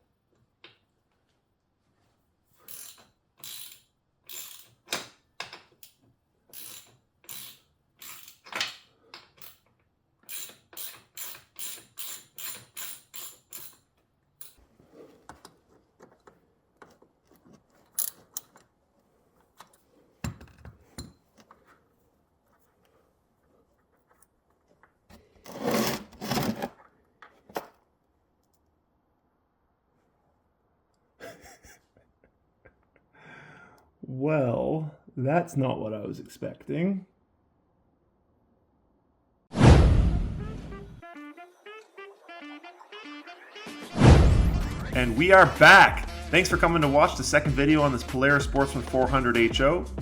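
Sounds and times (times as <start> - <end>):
sharp metal clicks: 10.3 - 13.8.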